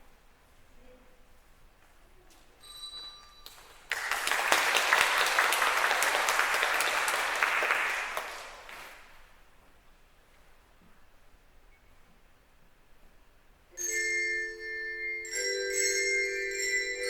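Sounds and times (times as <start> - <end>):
audience applauding: 3.5 - 9.2.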